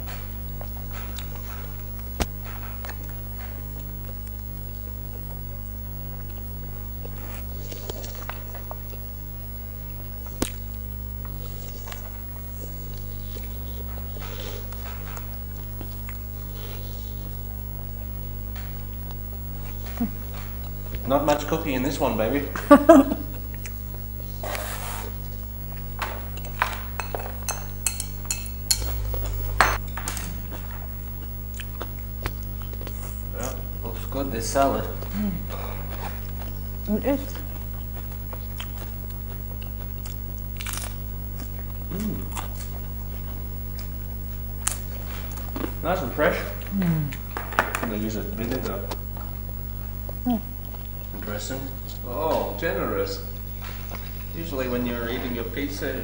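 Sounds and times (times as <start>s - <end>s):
low electrical hum: 0.0s - 56.0s
utensils clicking against plate: 26.4s - 29.1s.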